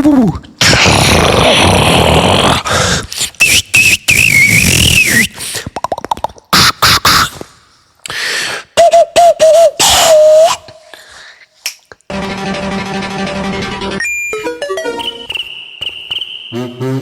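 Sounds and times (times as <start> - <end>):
beatboxer vocal sound effects: 0.0 - 7.6, 8.8 - 10.8, 16.6 - 17.0.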